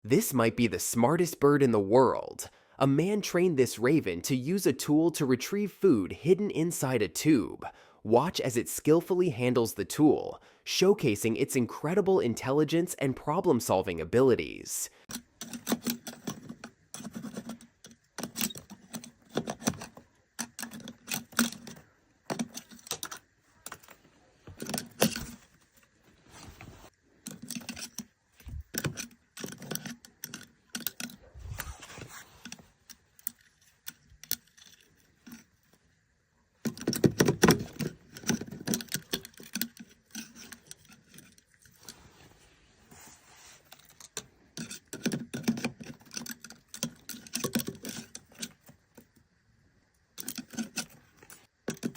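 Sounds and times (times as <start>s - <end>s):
knocks and handling noise: 15.1s - 36.0s, 36.6s - 49.4s, 50.1s - 51.9s.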